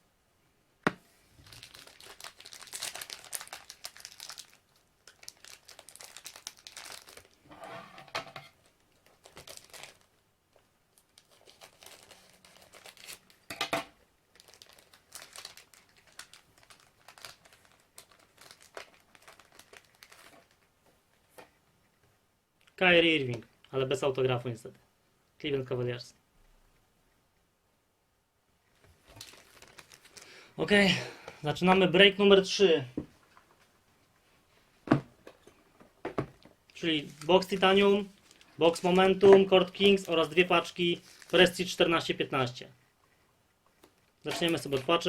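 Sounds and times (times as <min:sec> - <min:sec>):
card pack wrapper tearing and crinkling: 0:01.4 - 0:07.4, 0:08.7 - 0:10.2, 0:11.0 - 0:13.4, 0:14.3 - 0:20.7, 0:29.1 - 0:30.4, 0:37.0 - 0:41.8.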